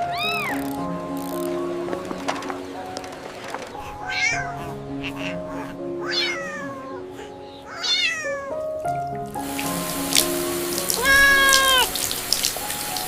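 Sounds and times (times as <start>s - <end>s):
light background music: 0.0s - 13.0s
high animal-like calls: 3.8s - 8.6s, 11.0s - 12.0s.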